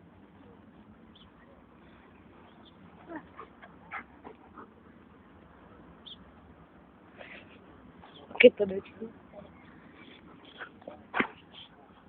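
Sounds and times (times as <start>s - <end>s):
dogs yelping and whining: 3.0s - 4.6s.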